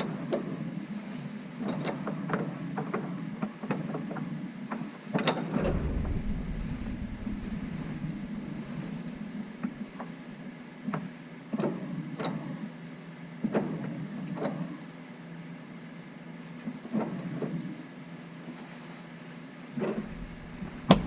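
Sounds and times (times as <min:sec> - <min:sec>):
machine hum: 0:05.5 - 0:10.4, 0:19.8 - 0:21.0.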